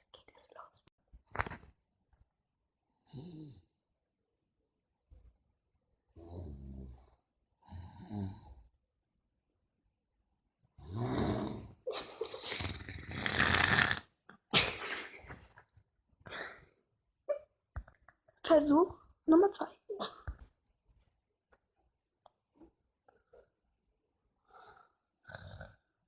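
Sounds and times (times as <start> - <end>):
person snoring: 3.0 - 3.6, 7.7 - 8.6, 10.8 - 11.8, 12.5 - 14.1, 24.5 - 25.8.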